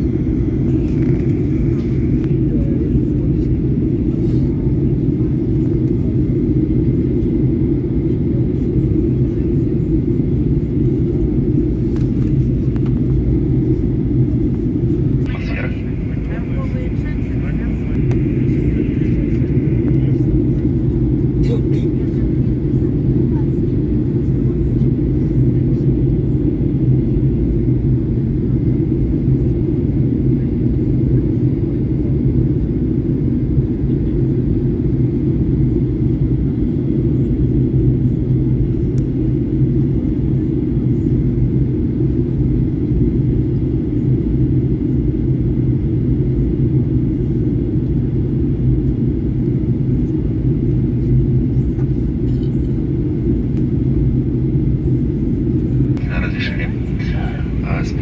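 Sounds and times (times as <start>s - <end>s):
airliner cabin engine rumble: 0.0s - 58.0s
faint thin whine: 15.3s - 20.8s.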